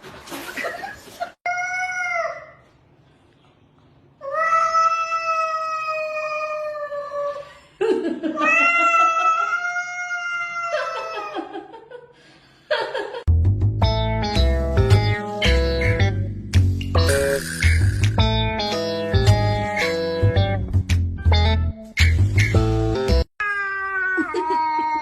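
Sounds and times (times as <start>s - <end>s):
music: 13.3s - 23.3s.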